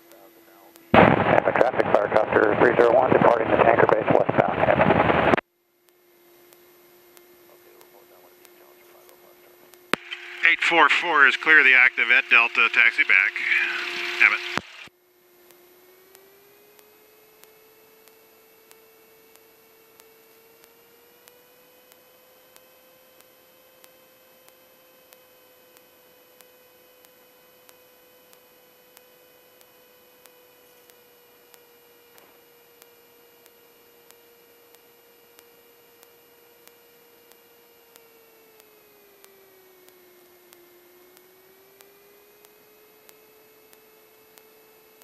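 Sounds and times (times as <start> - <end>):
faint electrical whine: 0.0 - 45.0
faint regular ticks: 5.8 - 45.0.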